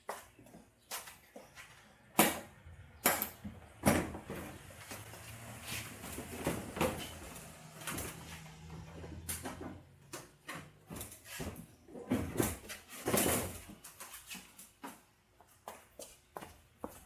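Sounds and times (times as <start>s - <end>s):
bumper cover rustling and scraping: 4.0s - 9.0s.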